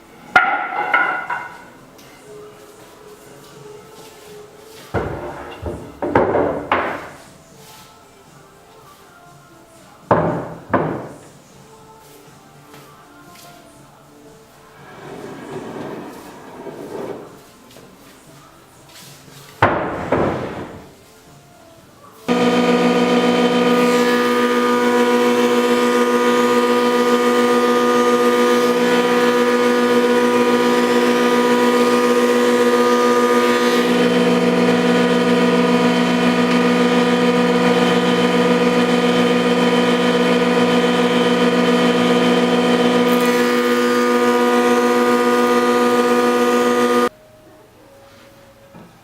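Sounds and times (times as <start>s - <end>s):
woodworking machine running: 22.3s - 47.1s.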